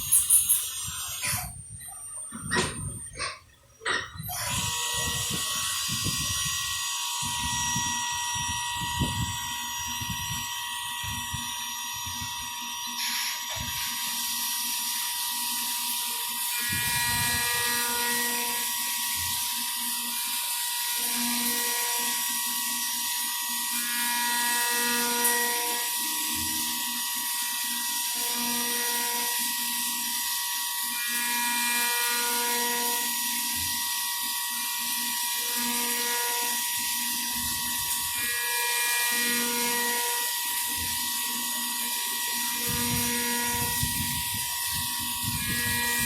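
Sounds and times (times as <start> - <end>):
milling machine spindle whine: 0.0 - 3.3, 4.1 - 46.0.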